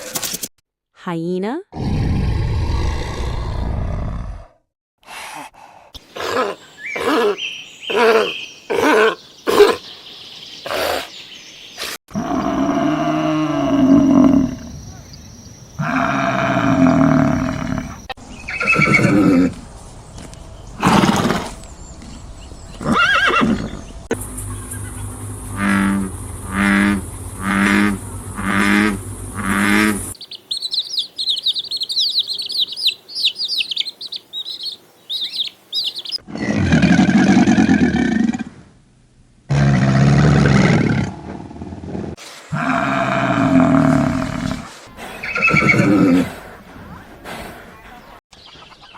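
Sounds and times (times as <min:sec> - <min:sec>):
birds chirping: 0:06.0 - 0:12.8, 0:13.6 - 0:36.5, 0:43.3 - 0:48.9
animal calls: 0:22.8 - 0:37.3.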